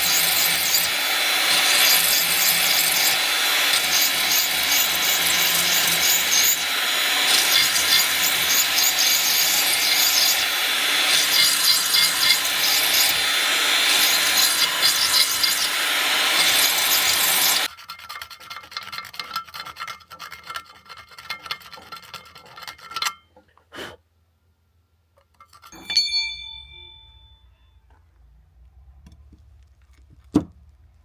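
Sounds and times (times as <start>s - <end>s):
hand tool scraping: 0.0s - 24.0s, 25.2s - 26.0s
metallic clink ringing: 25.7s - 27.9s.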